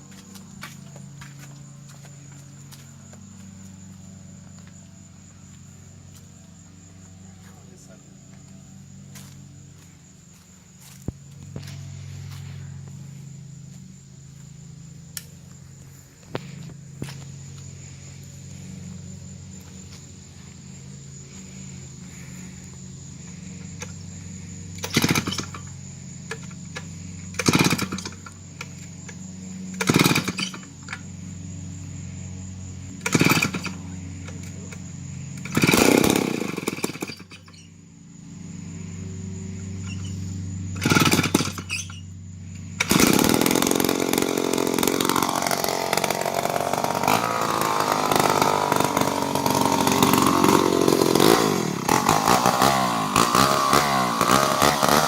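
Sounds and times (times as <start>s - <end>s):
chainsaw engine revving: 17.9s - 37.7s, 38.5s - 55.0s
chainsaw starter rope pulls: 24.7s - 25.7s, 26.3s - 31.1s, 33.0s - 34.8s, 35.4s - 37.7s, 39.8s - 42.0s, 42.7s - 55.0s.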